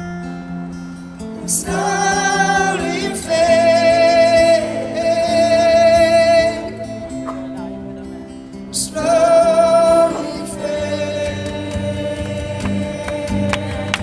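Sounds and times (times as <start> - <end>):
acoustic guitar: 0.0 - 14.0
person singing wordlessly: 1.5 - 6.9, 8.8 - 14.0.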